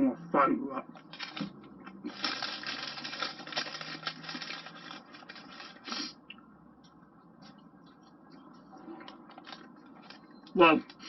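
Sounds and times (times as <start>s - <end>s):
chewing crispy chips: 2.1s - 6.1s.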